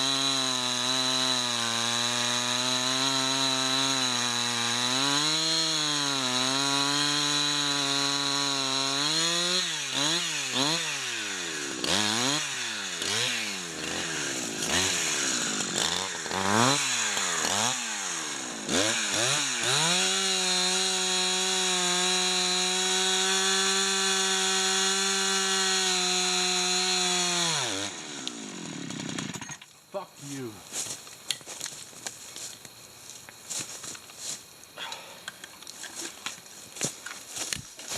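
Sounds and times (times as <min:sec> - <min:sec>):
chainsaw cutting a tree: 0:00.0 - 0:29.6.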